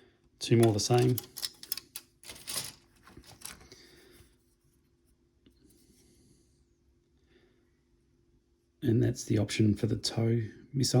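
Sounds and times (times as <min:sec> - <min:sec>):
plastic rustling and crinkling: 0:00.6 - 0:03.8.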